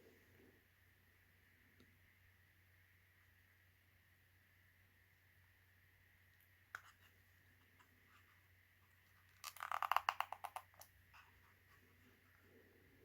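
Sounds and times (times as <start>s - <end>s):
packaging crinkling: 9.3s - 10.8s.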